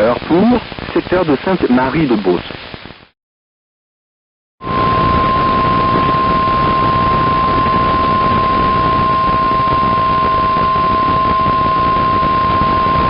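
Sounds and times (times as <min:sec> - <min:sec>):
radio receiver hiss: 0:00.0 - 0:03.2
steady warning alarm tone: 0:04.6 - 0:13.0.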